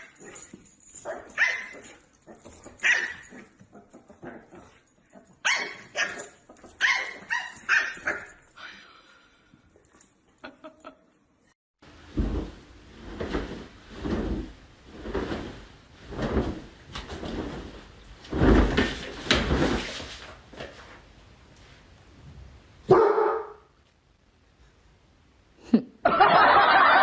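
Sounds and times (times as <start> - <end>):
dog barking: 2.8 - 3.2, 22.9 - 23.7.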